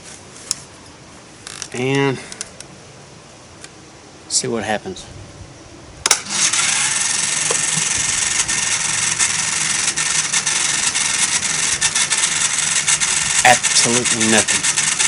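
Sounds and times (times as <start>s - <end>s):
small electric motor whirring: 6.1s - 15.0s.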